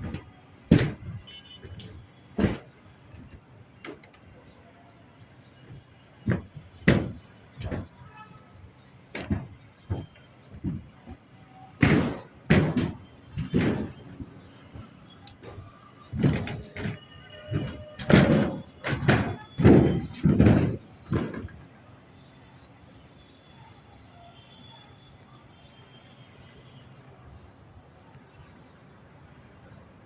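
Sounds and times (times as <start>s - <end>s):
excavator breaking concrete: 15.4s - 21.6s.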